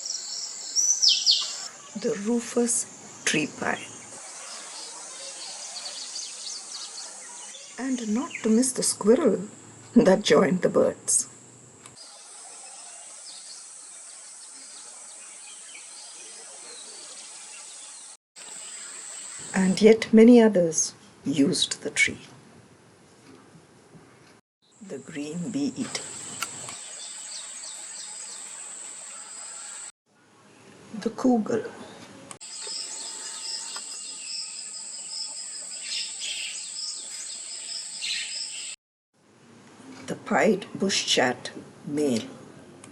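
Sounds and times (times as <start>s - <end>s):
faint bird chirps: 0.0s - 2.2s
pulsing insect chirp: 11.3s - 19.8s, 32.4s - 38.8s
high insect drone: 32.4s - 38.7s.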